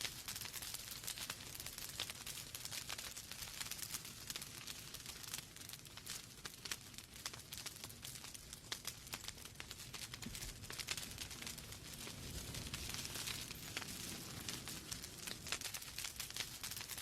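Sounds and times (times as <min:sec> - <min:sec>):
hiss of burning logs: 0:00.0 - 0:17.0
wood fire pops and snaps: 0:00.0 - 0:17.0.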